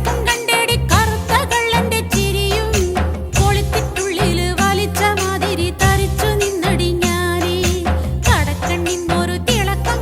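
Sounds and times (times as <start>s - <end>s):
song with sung melody and beat: 0.0s - 10.0s.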